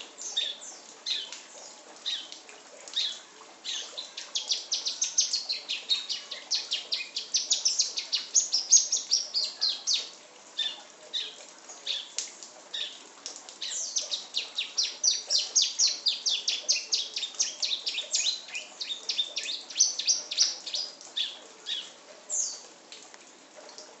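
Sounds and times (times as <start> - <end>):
songbird singing high chirps: 3.0 - 11.3, 13.6 - 22.6.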